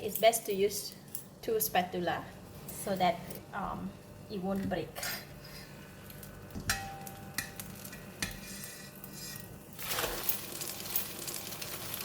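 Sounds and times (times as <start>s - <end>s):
omelette sizzling in oil: 7.4s - 12.0s
spatulas scraping frying pan: 8.2s - 10.3s.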